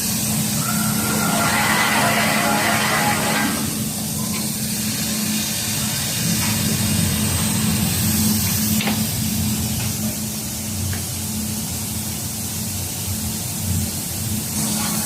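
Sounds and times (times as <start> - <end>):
quilting machine humming: 0.8 - 4.0.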